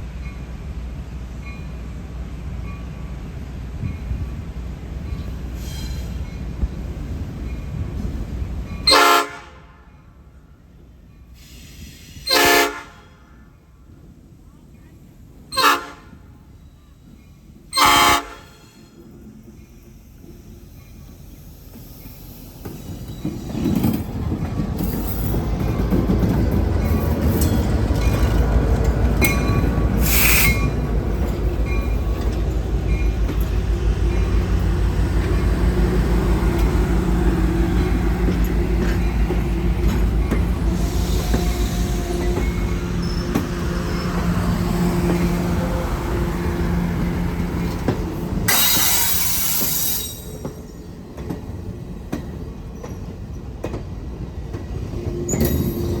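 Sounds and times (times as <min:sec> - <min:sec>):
loud hiss: 0:11.4 - 0:12.4, 0:48.5 - 0:50.3
locomotive drone: 0:19.2 - 0:51.3.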